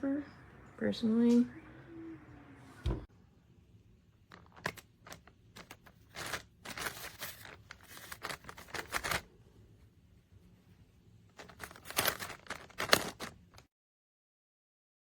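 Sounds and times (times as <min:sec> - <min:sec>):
plastic pack crinkling: 0:04.3 - 0:09.3, 0:11.3 - 0:13.6.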